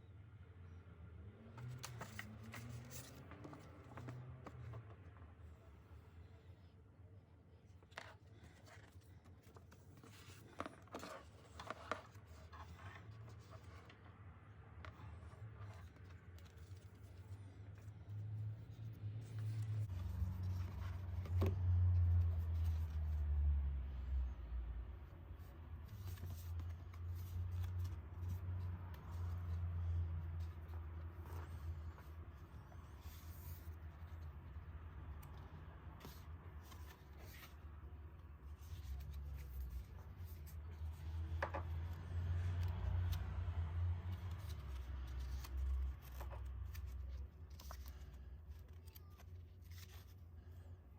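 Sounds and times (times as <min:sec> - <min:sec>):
paper and card rustling: 0:01.6 - 0:05.5, 0:07.7 - 0:23.4, 0:25.0 - 0:50.7.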